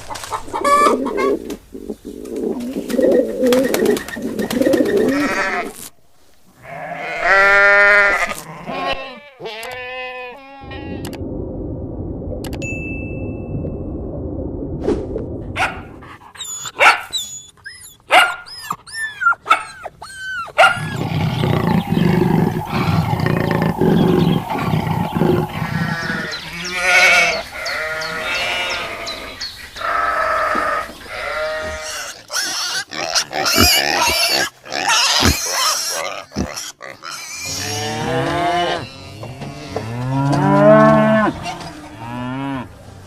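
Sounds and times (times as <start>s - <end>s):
low rumbling animal call: 10.1s - 12.6s, 20.0s - 31.8s
long animal calls with overtones: 20.0s - 29.2s.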